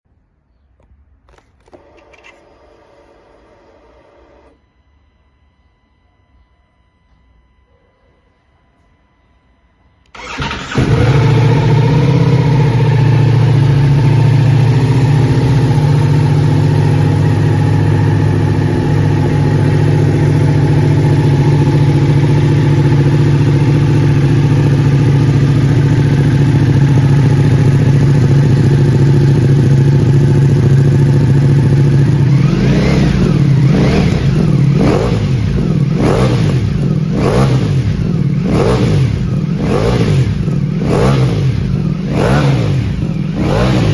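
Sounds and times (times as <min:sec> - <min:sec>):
motorcycle throttle blips: 0:10.1 - 0:43.9
motorcycle engine idling: 0:10.2 - 0:43.9.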